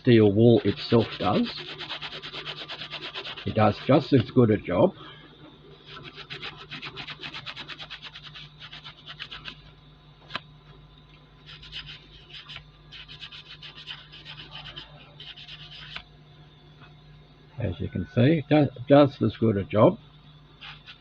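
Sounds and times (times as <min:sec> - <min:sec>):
scouring pad scrubbing metal: 0:00.2 - 0:04.1.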